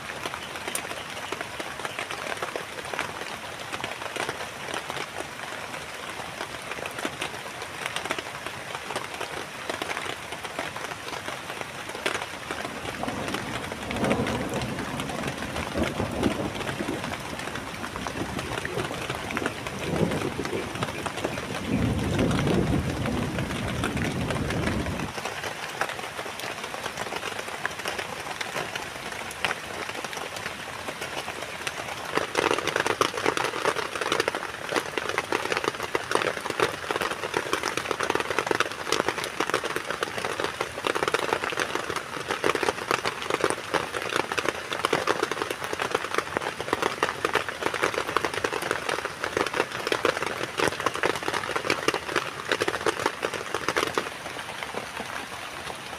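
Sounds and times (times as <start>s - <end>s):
heavy rain pattering on a tent: 0.0s - 55.9s
low rumble of thunder: 12.9s - 25.2s.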